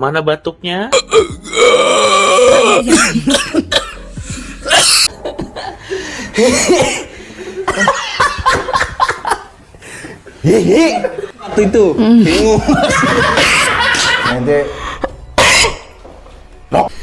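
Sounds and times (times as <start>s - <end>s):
person coughing: 0.9s - 1.7s, 2.4s - 5.1s, 6.4s - 7.1s, 15.4s - 15.9s
laughter: 6.4s - 9.5s, 12.3s - 14.4s.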